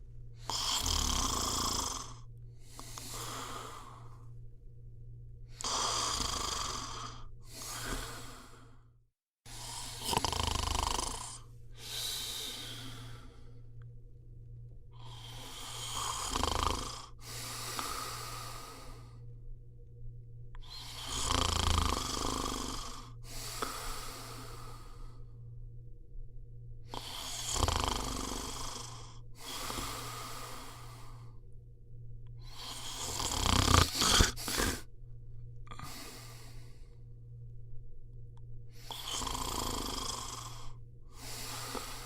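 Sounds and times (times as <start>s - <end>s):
person snoring: 0.4s - 4.3s, 5.5s - 8.8s, 9.5s - 13.6s, 14.9s - 19.3s, 20.6s - 25.4s, 26.8s - 31.4s, 32.4s - 34.9s, 35.7s - 37.0s, 38.7s - 42.0s
soft breath: 1.8s - 4.5s, 5.4s - 8.9s, 11.1s - 14.2s, 17.0s - 19.6s, 22.8s - 25.6s, 26.8s - 37.4s, 40.2s - 42.0s.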